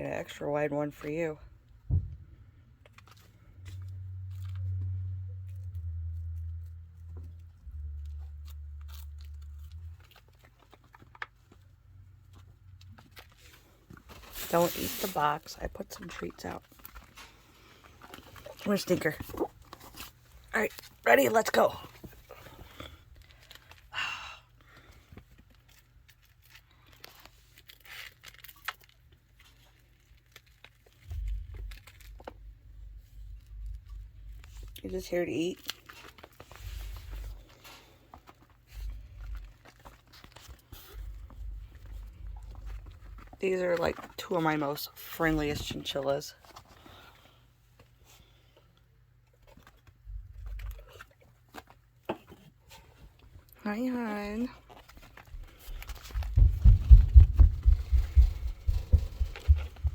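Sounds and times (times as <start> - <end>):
chinchillas scrabbling and gnawing: 2.8 - 23.9, 24.7 - 53.5, 54.6 - 56.7
low rumble: 3.6 - 10.2, 55.7 - 59.9.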